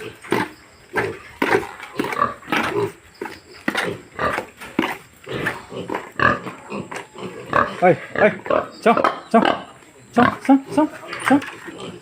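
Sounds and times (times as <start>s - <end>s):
pigs grunting: 0.0s - 12.0s.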